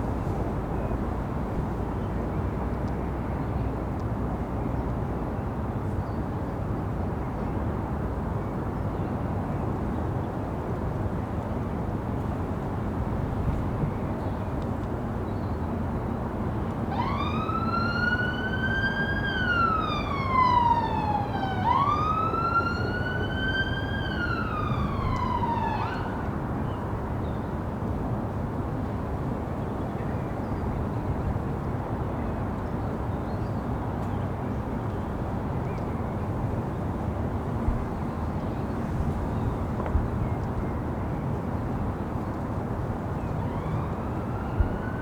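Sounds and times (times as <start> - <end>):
city traffic rumble: 0.0 - 45.0
emergency vehicle siren wailing: 16.7 - 27.1, 43.2 - 45.0.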